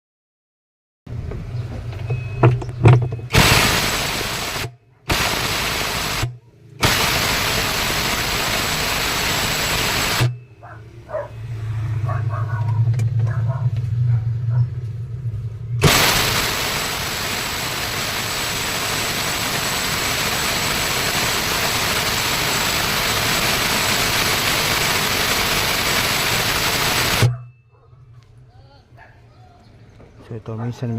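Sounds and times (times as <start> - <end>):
low hum: 1.1 - 28.5
power tool running with high whine: 3.4 - 10.4, 15.8 - 27.3.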